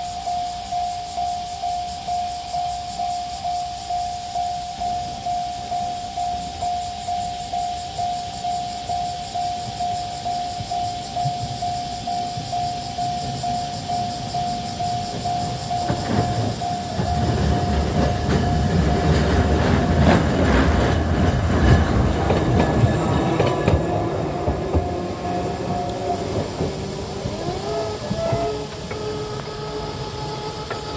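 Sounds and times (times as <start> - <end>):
level-crossing alarm bell: 0.0 - 30.9
tram rumbling: 8.7 - 30.9
wheels clicking over rails: 10.5 - 30.9
rising whine: 13.8 - 30.9.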